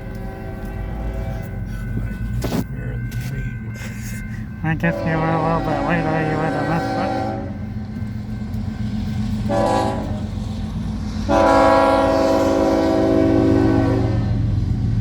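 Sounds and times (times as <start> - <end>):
low rumble of passing train: 0.0 - 15.0
locomotive air horn blasts: 0.1 - 1.5, 4.8 - 7.6, 9.4 - 10.3, 11.3 - 14.5.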